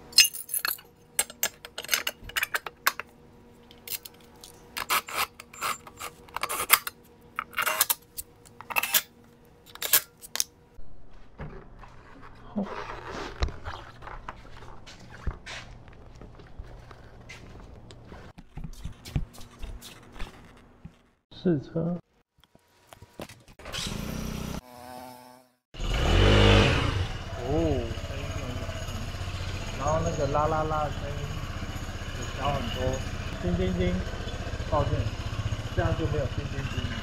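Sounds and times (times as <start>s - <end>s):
metal tools clinking and scraping: 0.0s - 3.1s, 3.7s - 10.5s.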